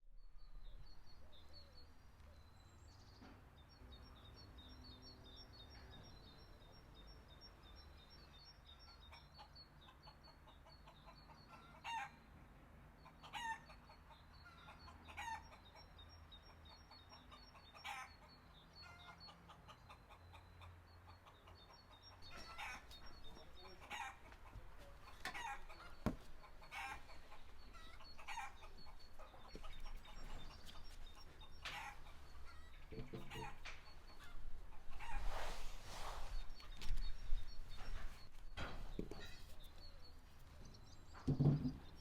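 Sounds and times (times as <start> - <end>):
small birds chirping: 0.2 - 12.3, 12.9 - 42.0
chickens clucking: 8.7 - 12.1, 12.9 - 42.0.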